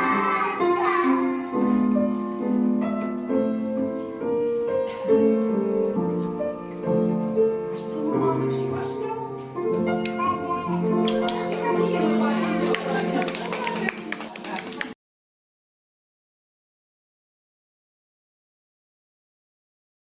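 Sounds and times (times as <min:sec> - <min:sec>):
piano melody with chords: 0:00.0 - 0:14.1.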